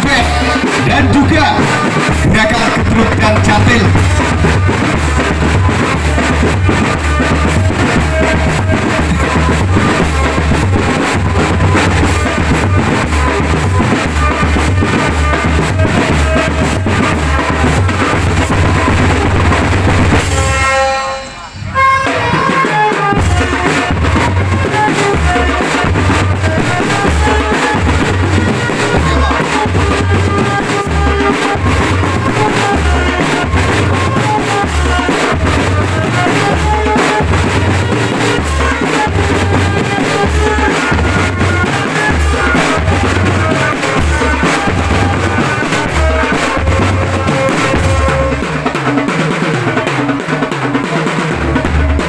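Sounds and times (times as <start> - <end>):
bass drums pounding: 0.0 - 20.7, 23.1 - 49.1.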